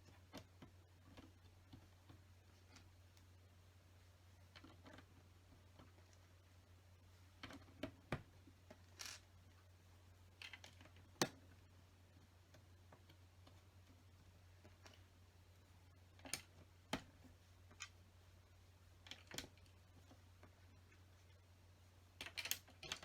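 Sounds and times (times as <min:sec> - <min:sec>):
faint low hum: 0:00.0 - 0:23.0
plastic pieces clicking: 0:22.2 - 0:23.0.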